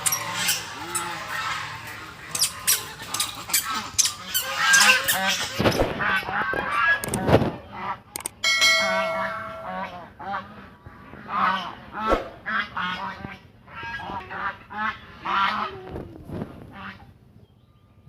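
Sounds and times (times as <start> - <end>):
geese honking: 0.0 - 7.0.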